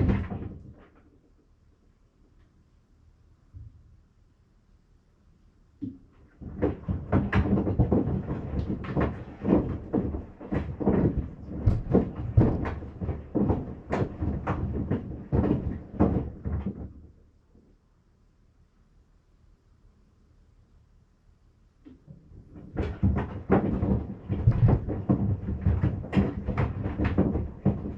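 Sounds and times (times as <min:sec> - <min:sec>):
sandals knocking in washing machine: 0:05.8 - 0:17.1, 0:21.9 - 0:27.9.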